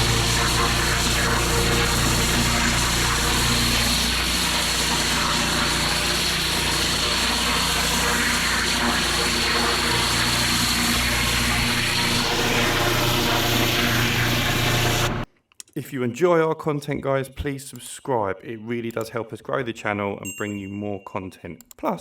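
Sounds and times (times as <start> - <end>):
water jet spraying on paving: 0.0 - 15.2
pressure washer motor hum: 0.0 - 15.3.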